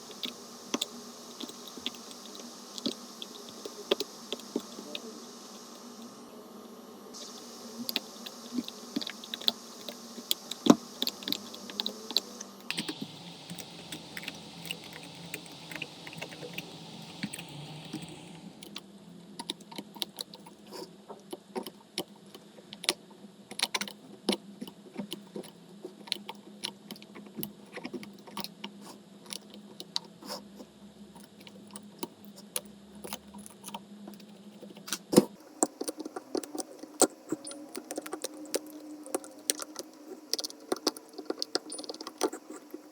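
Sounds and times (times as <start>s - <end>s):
steady hiss: 0.0s - 18.8s
low steady hum: 0.0s - 23.4s.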